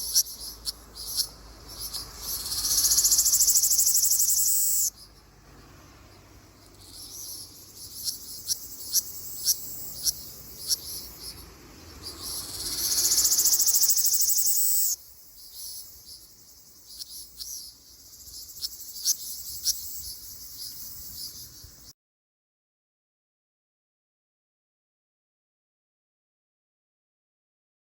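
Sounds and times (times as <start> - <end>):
sharp high chirps: 0.0 - 5.2, 12.0 - 16.3
cicada buzzing: 0.0 - 21.9.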